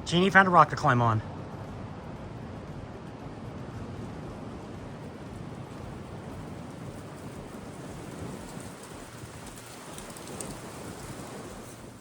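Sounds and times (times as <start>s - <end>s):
wind gusting across microphone: 0.0s - 12.0s.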